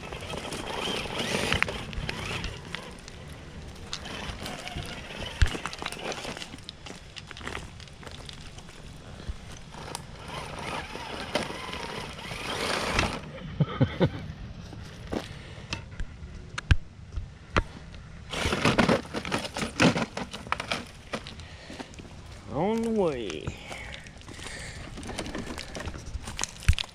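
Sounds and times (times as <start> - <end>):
rc car tires scrabbling: 0.0 - 13.4, 17.6 - 26.9
stones knocking and clattering: 0.1 - 8.9, 18.4 - 22.0, 22.8 - 26.9.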